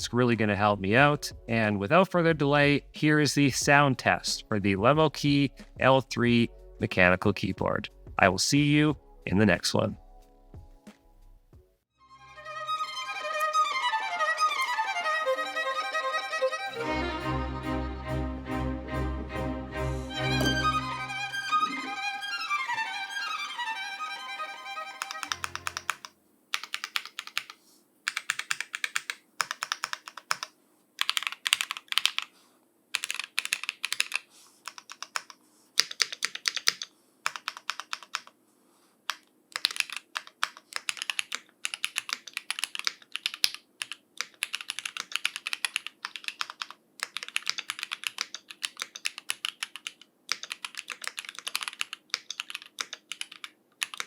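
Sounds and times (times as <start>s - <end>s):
violin music: 12.0s - 26.0s
mechanical keyboard typing: 25.0s - 32.3s, 32.9s - 38.4s, 39.1s - 54.0s.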